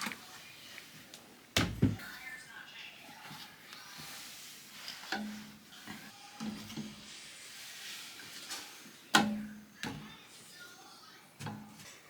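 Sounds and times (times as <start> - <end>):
household handling knocks and clicks: 1.6 - 2.1.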